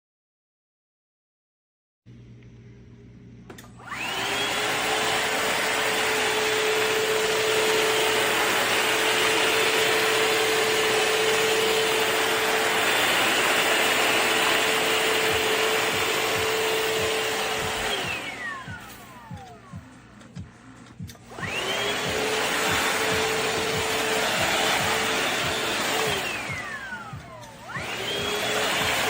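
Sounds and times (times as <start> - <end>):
vacuum mop motor whirring: 3.5 - 29.0.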